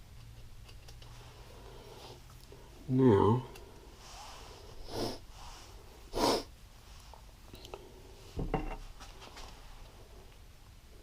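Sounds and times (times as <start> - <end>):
short breathy hisses: 4.0 - 6.5.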